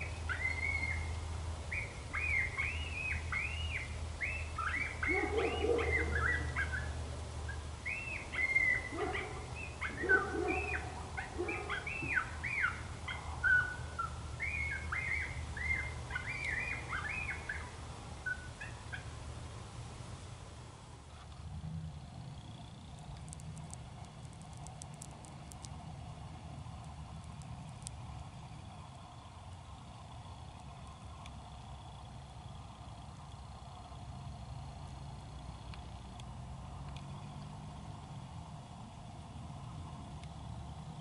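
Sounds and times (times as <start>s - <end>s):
coyotes yipping and howling: 0.0s - 19.2s
coyote barks: 1.7s - 19.1s.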